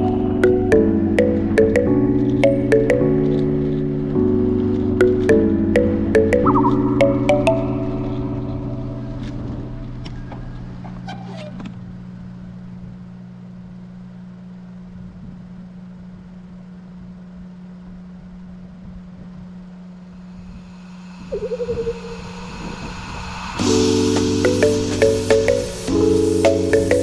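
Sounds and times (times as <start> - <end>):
background music with plucked notes: 0.0 - 10.1, 23.6 - 27.0.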